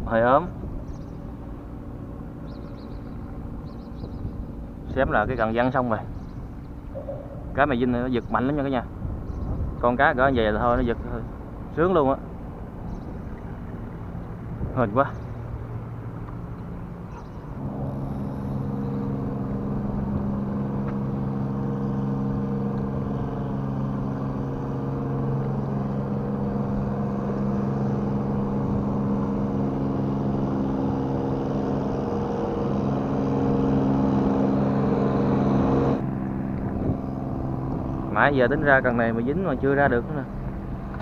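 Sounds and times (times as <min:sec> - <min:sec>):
engine humming steadily: 0:00.0 - 0:41.0.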